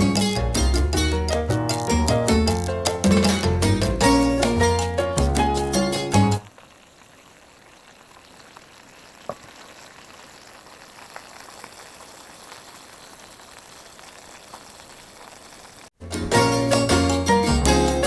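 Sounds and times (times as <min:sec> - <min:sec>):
crackles and pops: 0:01.7 - 0:02.8, 0:06.4 - 0:16.0
food sizzling in pan: 0:06.4 - 0:16.0.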